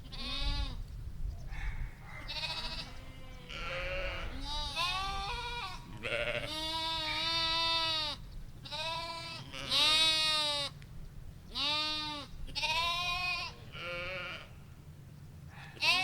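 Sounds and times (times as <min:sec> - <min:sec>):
sheep bleating: 0:02.2 - 0:10.7, 0:11.6 - 0:14.6, 0:15.8 - 0:16.0.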